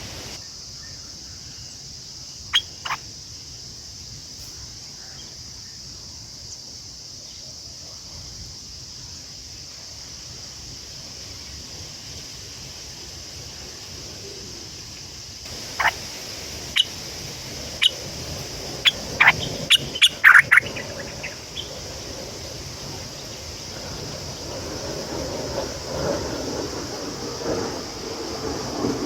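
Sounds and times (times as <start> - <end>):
rushing noise: 0.0 - 0.4, 15.5 - 29.0
steady high hiss: 0.0 - 29.0
short sharp bird calls: 18.8 - 21.8.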